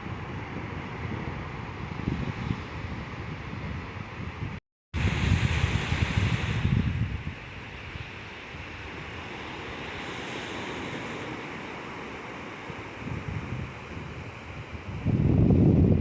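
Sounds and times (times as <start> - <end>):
wind: 0.0 - 16.0
sea surf washing: 5.0 - 16.0.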